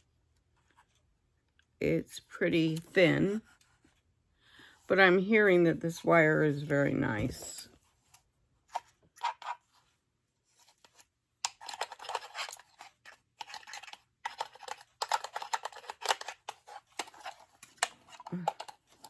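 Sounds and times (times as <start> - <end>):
plastic clicking and crinkling: 10.7 - 19.0.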